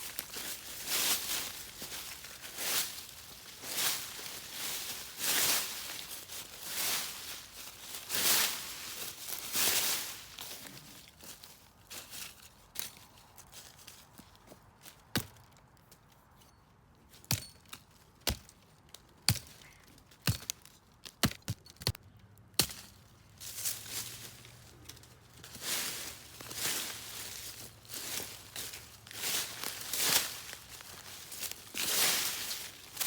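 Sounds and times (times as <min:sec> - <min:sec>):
rustling brush: 0:00.0 - 0:14.4, 0:23.4 - 0:33.0.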